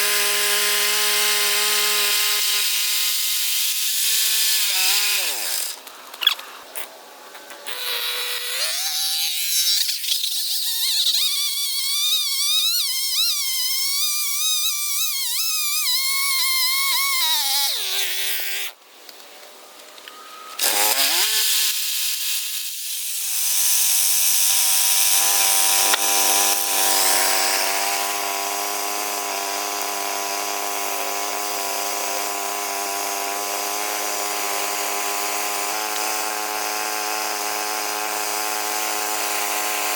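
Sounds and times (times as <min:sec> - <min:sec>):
band sawmill cutting wood: 0:00.0 - 0:05.8, 0:20.6 - 0:21.9, 0:23.2 - 0:39.9.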